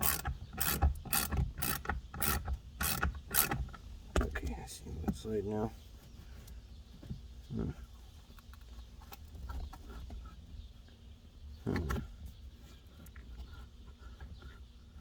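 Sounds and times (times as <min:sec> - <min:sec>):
tools clicking and knocking: 0:00.0 - 0:04.4.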